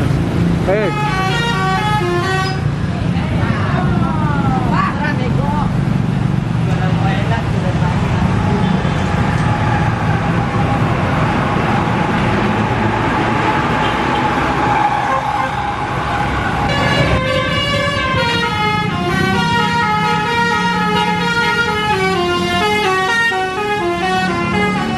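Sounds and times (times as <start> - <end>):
traffic and engine noise: 0.0 - 24.9
bus horn playing a tune: 0.8 - 2.7, 15.0 - 15.6, 16.7 - 24.9.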